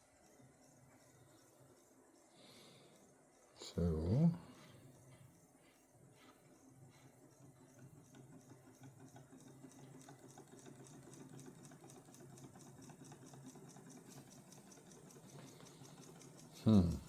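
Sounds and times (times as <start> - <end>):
motor ticking rapidly: 6.5 - 17.0.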